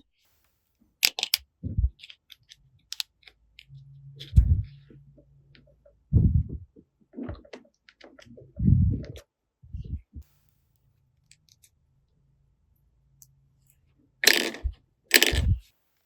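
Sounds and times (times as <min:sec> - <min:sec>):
plastic toy pieces clicking: 0:01.0 - 0:01.4, 0:14.2 - 0:15.6.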